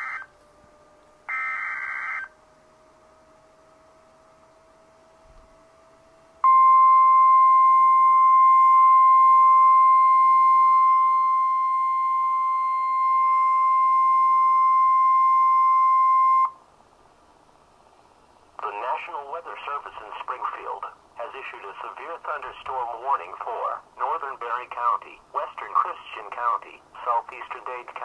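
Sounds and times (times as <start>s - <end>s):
loud high alarm tone: 0.0s - 0.3s, 1.3s - 2.4s, 6.4s - 16.6s
faint low hum: 0.0s - 28.0s.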